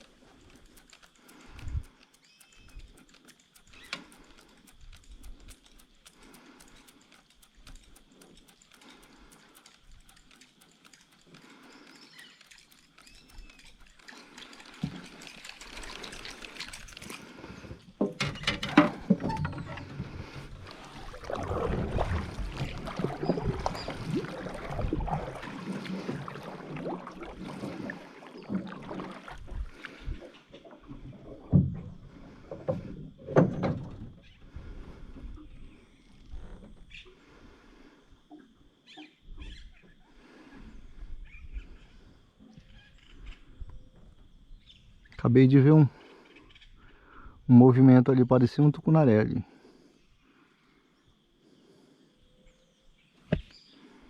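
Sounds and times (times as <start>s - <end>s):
faint chirps: 0.6s - 16.3s, 22.4s - 24.9s, 34.2s - 54.0s
water splashing around boat: 3.0s - 37.9s.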